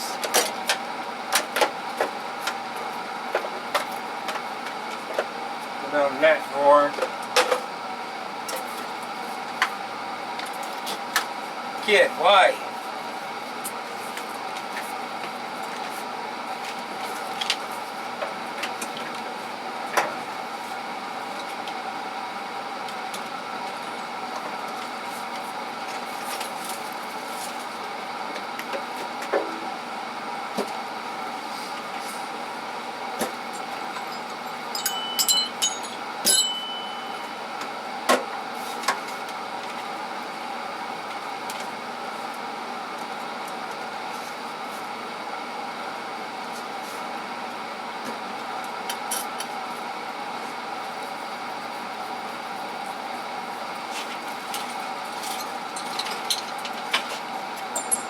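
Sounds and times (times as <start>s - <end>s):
machine hum: 32.3s - 38.0s
ringing metal clinks: 34.0s - 37.3s, 57.8s - 58.0s.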